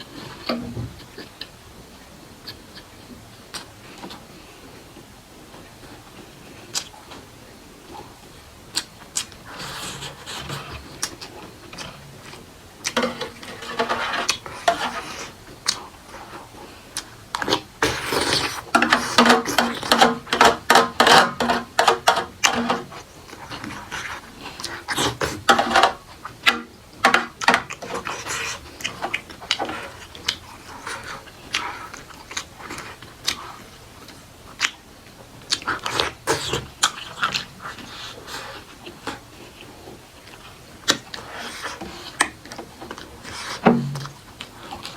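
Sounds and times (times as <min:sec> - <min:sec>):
wet chewing and lip smacks: 0:08.7 - 0:09.4, 0:27.4 - 0:43.4.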